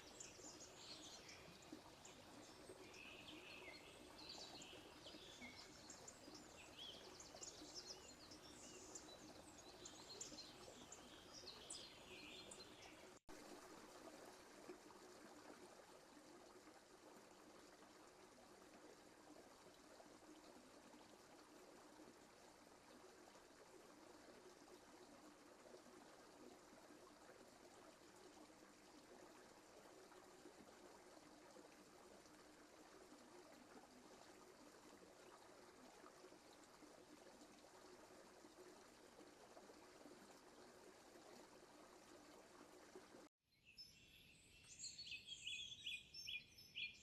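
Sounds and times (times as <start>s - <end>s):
woodland birdsong: 0.0s - 13.2s, 43.5s - 47.0s.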